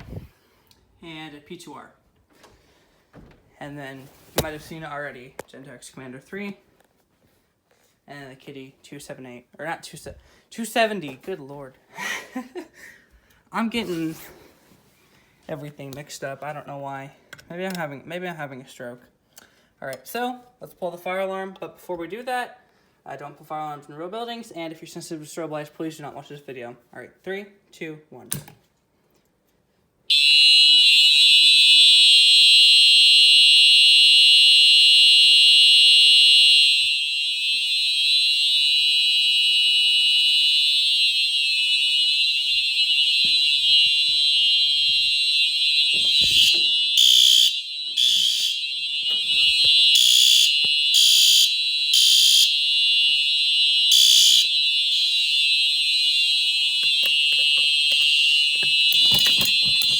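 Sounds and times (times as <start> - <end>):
fire alarm horns blaring: 30.1 - 59.9.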